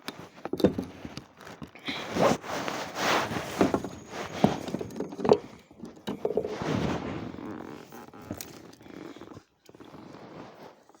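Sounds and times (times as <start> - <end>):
soft knocks and scrapes in kayak: 2.2 - 7.4.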